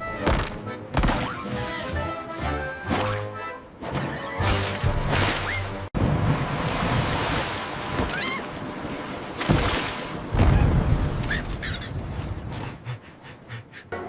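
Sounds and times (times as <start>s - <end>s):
water rushing and splashing: 0.2s - 12.5s
heavy splashing thuds: 8.9s - 11.2s.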